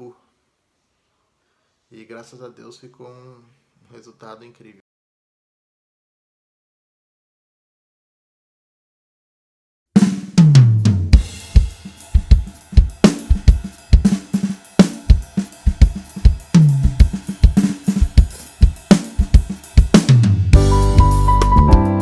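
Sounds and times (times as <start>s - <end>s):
drum kit playing a groove: 10.0s - 22.0s.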